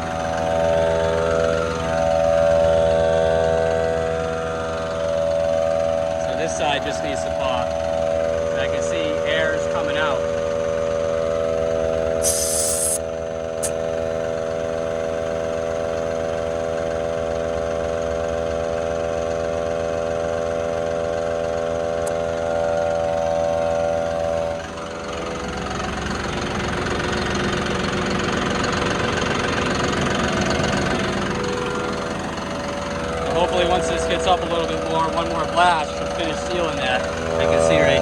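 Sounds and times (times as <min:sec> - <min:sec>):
air compressor running: 0:00.0 - 0:38.0
diesel tractor engine idling: 0:00.0 - 0:38.0
air rushing: 0:12.2 - 0:13.0
air hissing: 0:12.2 - 0:13.9.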